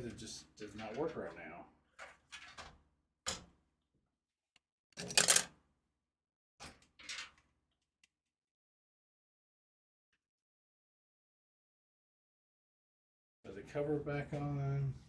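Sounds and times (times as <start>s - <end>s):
hardware parts clicking: 5.0s - 5.5s.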